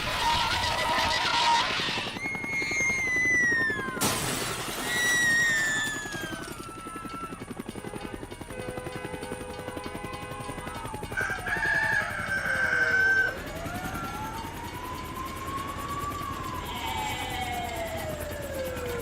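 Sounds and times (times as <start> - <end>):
long falling whistles: 0.0 - 7.6, 12.4 - 19.0.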